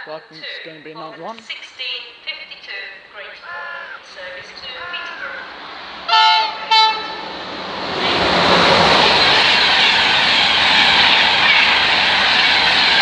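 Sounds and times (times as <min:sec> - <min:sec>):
train wheels rumbling on track: 0:01.5 - 0:13.0
train horn blasts: 0:03.5 - 0:11.8.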